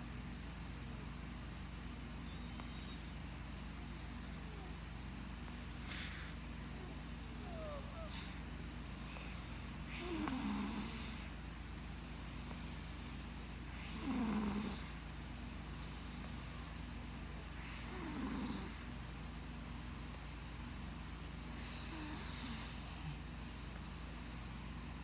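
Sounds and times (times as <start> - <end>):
person snoring: 21.7 - 22.8.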